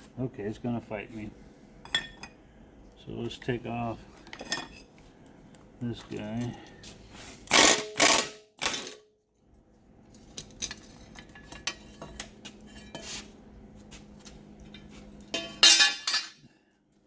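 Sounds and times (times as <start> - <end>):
metal parts clinking and clattering: 10.4 - 12.4, 15.3 - 16.5.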